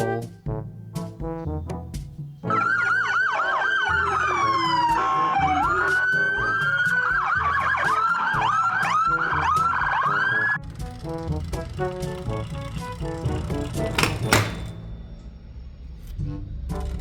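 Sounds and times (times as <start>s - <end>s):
background music with steady beat: 0.0s - 2.5s
toy police car sirens: 2.5s - 10.6s.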